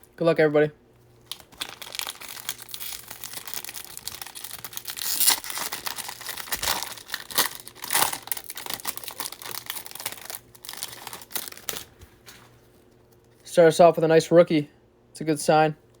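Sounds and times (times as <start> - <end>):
wrapper crackling: 1.2 - 12.4
wrapper ripping: 1.2 - 12.4.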